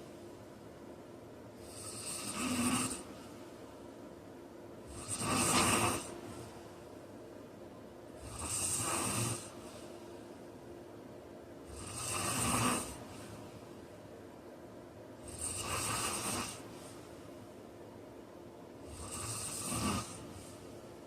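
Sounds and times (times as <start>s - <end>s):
man snoring loudly: 1.6s - 3.0s, 4.9s - 6.2s, 8.2s - 9.5s, 11.7s - 13.0s, 15.3s - 16.6s, 18.9s - 20.2s.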